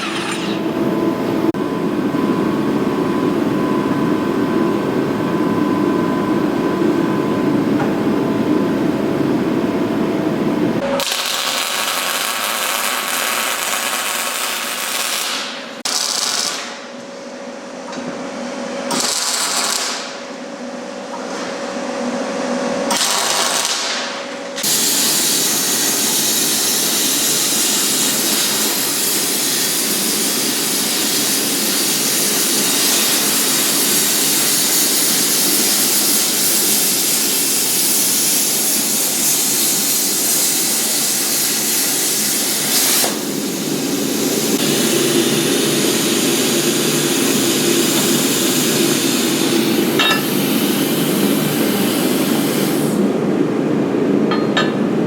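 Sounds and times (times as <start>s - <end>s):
power tool working metal: 0.0s - 0.8s, 42.0s - 52.9s.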